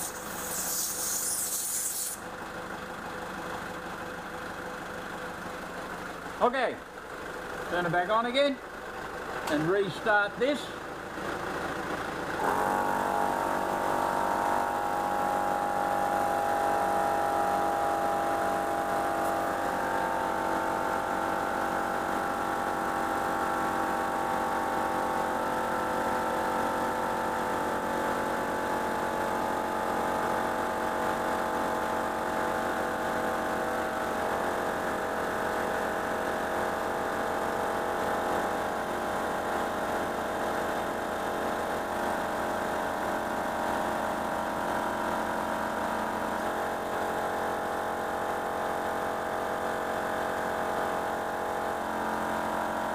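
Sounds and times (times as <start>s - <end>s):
portable air compressor running: 0.0s - 5.4s, 8.8s - 52.9s
diesel engine idling: 0.0s - 12.5s, 18.7s - 25.7s.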